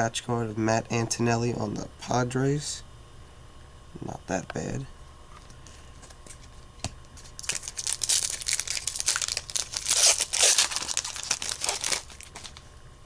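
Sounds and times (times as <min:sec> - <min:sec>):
wrapper tearing and crinkling: 0:07.3 - 0:12.7.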